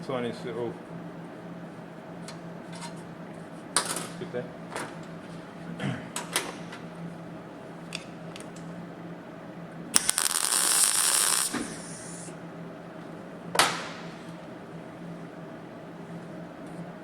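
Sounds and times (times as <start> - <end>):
welding arc crackling: 9.9 - 12.3.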